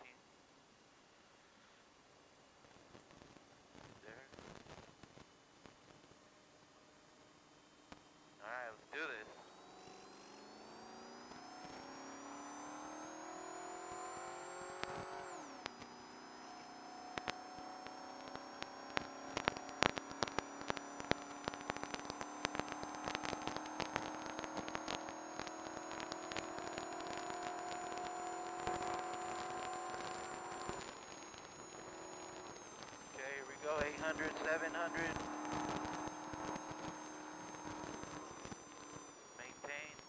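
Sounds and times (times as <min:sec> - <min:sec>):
truck engine revving: 0:31.7 - 0:38.8.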